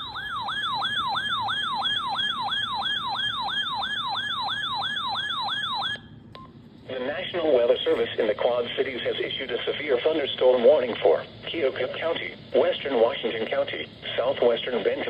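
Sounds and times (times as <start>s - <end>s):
electronic falling yelp siren: 0.0s - 6.1s.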